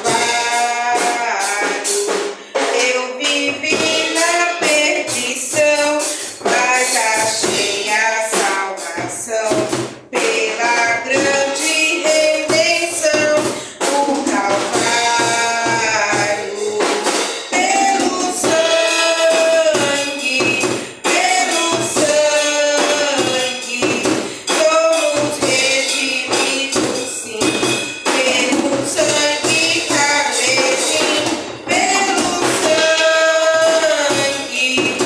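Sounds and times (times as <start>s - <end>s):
voices singing worship song: 0.0s - 35.0s.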